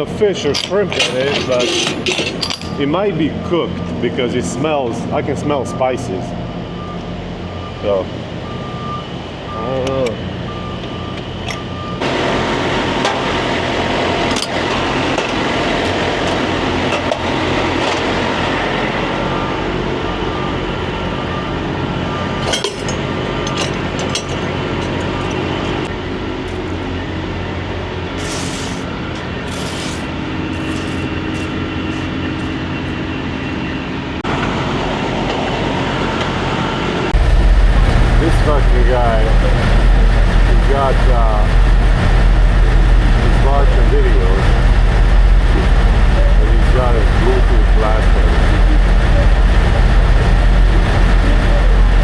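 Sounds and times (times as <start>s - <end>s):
engine running steadily: 0.0s - 52.0s.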